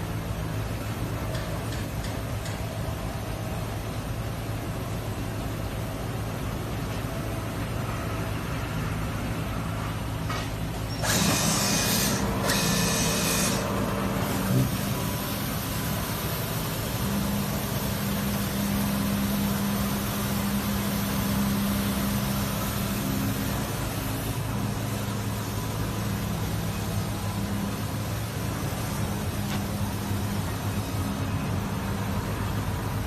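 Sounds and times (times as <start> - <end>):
cutting machine humming: 11.0 - 14.7.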